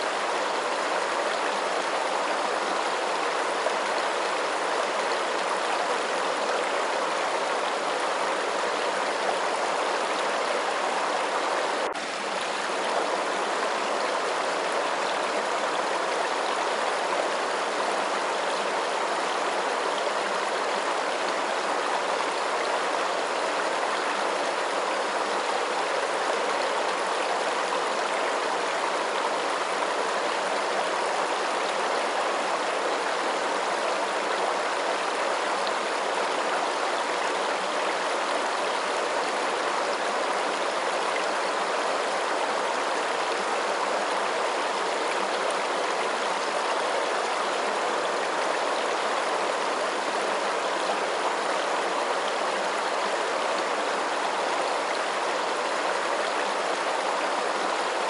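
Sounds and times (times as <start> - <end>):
stream water rushing: 0.0 - 58.0.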